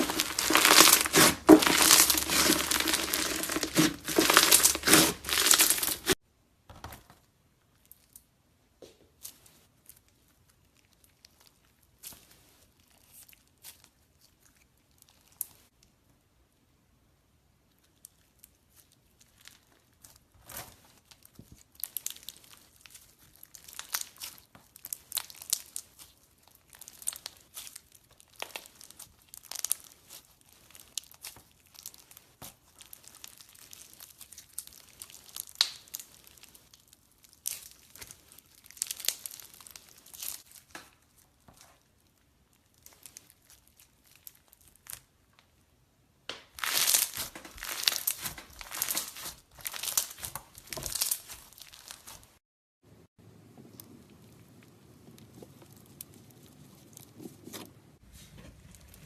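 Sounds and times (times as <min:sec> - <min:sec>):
crunchy slime crackling and popping: 0:00.0 - 0:06.2, 0:17.7 - 0:45.6, 0:46.3 - 0:52.4, 0:53.6 - 0:57.6.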